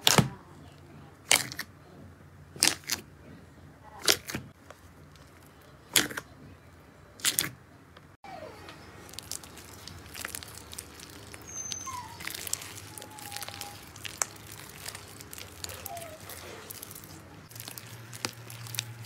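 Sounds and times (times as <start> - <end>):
slime squelching: 0.0 - 0.4, 1.2 - 1.8, 2.5 - 3.2, 3.9 - 6.5, 7.2 - 7.6, 8.3 - 19.0.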